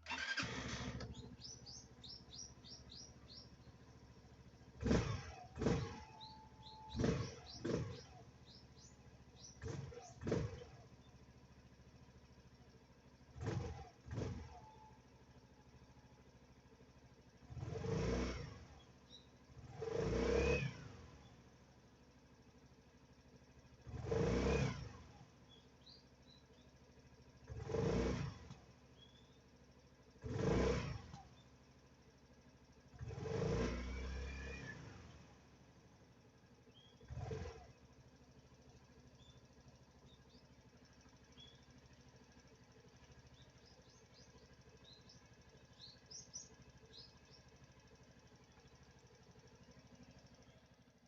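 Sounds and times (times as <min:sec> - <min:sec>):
short loud mechanical bursts: 0:00.0 - 0:01.8, 0:04.8 - 0:08.2
scooter throttle revs: 0:00.0 - 0:12.1, 0:13.1 - 0:14.8, 0:17.3 - 0:21.8, 0:23.5 - 0:50.9
scooter engine idling: 0:00.0 - 0:19.8, 0:20.8 - 0:24.2, 0:24.8 - 0:33.2, 0:34.0 - 0:51.0
small birds chirping: 0:01.0 - 0:11.8, 0:18.6 - 0:19.5, 0:25.3 - 0:27.4, 0:28.6 - 0:29.6, 0:31.0 - 0:31.8, 0:36.2 - 0:50.7.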